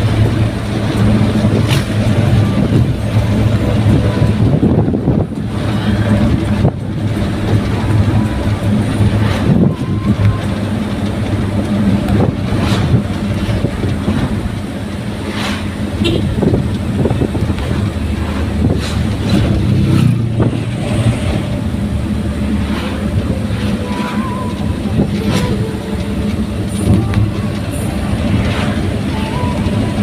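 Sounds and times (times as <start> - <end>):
road noise: 0.0 - 30.0
vehicle engine hum: 0.0 - 30.0.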